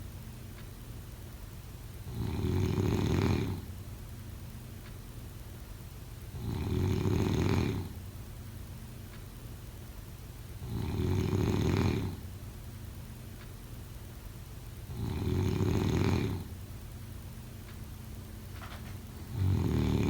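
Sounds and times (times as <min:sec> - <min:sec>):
person snoring: 0:02.1 - 0:03.7, 0:06.4 - 0:07.9, 0:10.6 - 0:12.2, 0:14.9 - 0:16.5, 0:19.2 - 0:20.0.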